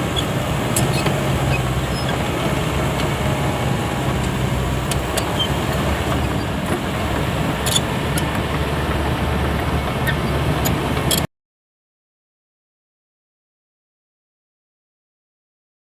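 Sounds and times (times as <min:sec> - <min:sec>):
bulldozer diesel engine running: 0:00.0 - 0:11.3.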